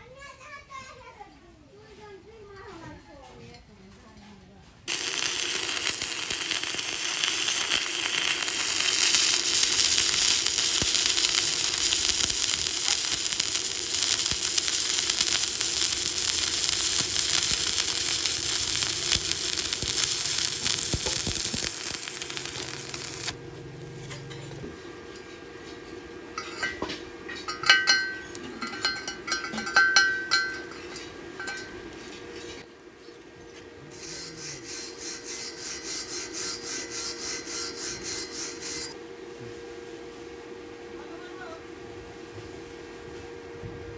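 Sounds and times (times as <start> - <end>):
welding arc crackling: 4.9 - 24.1.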